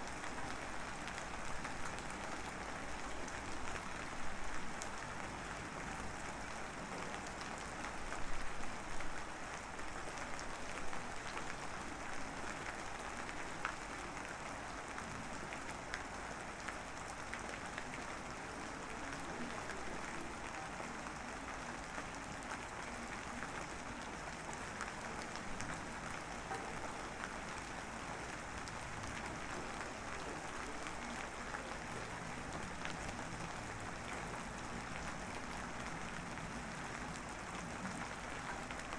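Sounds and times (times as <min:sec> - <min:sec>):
drizzling rain hiss: 0:00.0 - 0:38.9.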